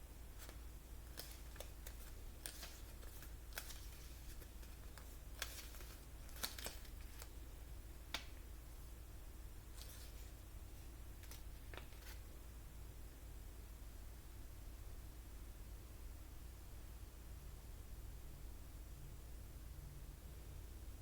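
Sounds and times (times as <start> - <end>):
paper pages rustling: 0.4 - 7.4, 9.7 - 10.3, 11.2 - 12.3.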